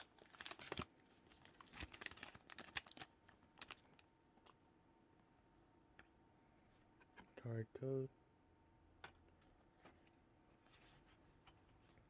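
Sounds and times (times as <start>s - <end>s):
foil pack crinkling: 0.0s - 4.1s.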